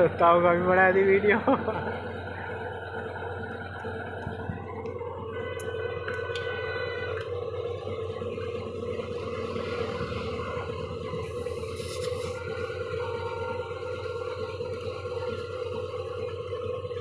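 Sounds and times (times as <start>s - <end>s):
air compressor running: 0.0s - 17.0s
brief air hiss: 11.6s - 12.4s.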